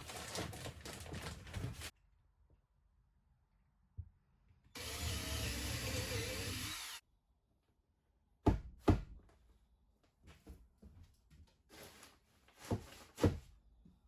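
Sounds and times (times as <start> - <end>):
power tool running: 4.8 - 7.0.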